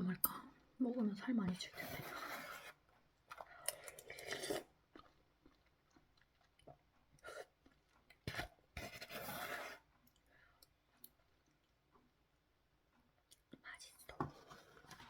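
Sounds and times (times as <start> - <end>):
person eating noodles: 1.8 - 9.8.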